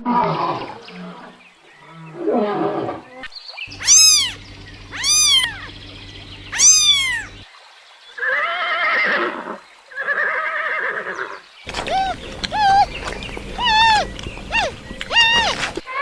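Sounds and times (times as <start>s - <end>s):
animal quavering calls: 2.8s - 7.4s, 11.7s - 16.0s
animal high cries: 3.7s - 5.7s, 6.3s - 7.4s, 11.7s - 16.0s.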